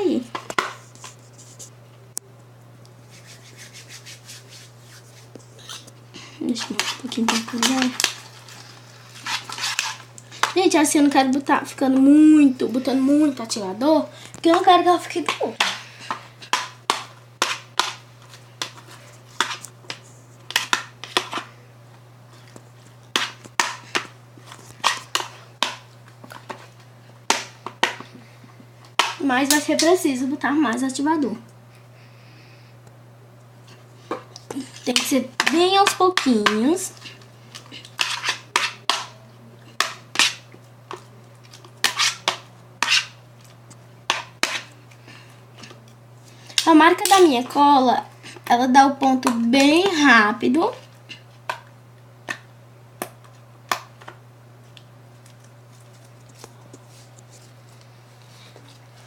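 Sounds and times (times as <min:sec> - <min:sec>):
spoon stirring sticky slime: 0:03.0 - 0:21.5, 0:33.7 - 0:44.8.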